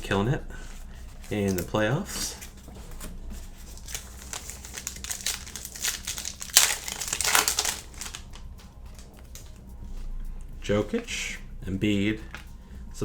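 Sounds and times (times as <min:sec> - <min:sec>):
foil wrapper crinkling: 0:00.6 - 0:09.6.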